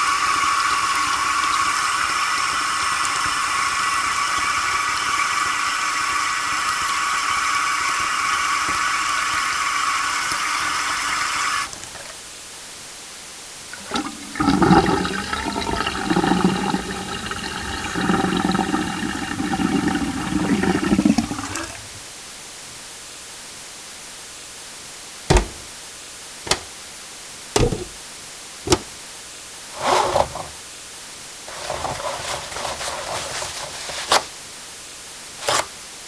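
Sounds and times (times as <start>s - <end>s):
toilet flushing: 0.0s - 12.2s, 13.7s - 22.0s, 29.7s - 30.6s, 31.5s - 34.1s
sharp clicks: 26.5s - 26.7s.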